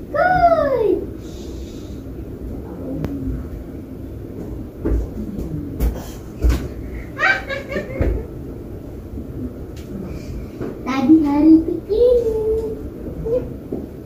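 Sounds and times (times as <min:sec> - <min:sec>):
child's voice: 0:00.1 - 0:01.1, 0:10.8 - 0:13.5.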